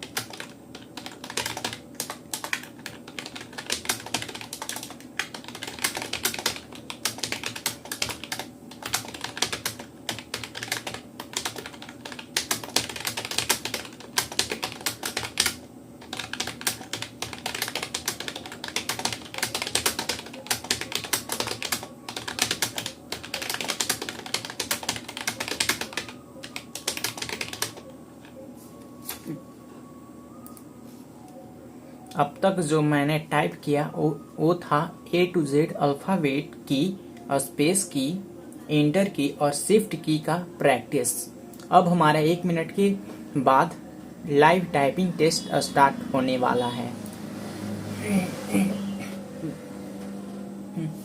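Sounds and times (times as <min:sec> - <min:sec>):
fast typing on keyboard: 0:00.0 - 0:27.8.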